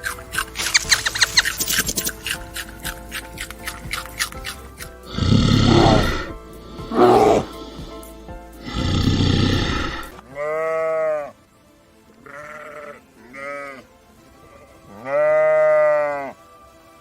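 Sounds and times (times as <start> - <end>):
rough noisy animal call: 0.0 - 11.4, 12.2 - 16.4
animal bleats: 5.1 - 7.7, 8.6 - 11.4, 12.2 - 16.4.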